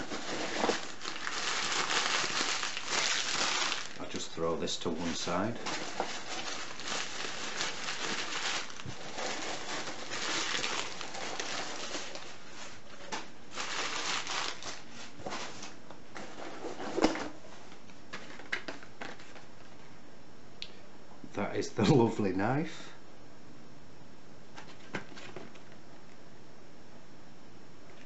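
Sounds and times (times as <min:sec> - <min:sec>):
newspaper rustling and crinkling: 0:00.0 - 0:19.8.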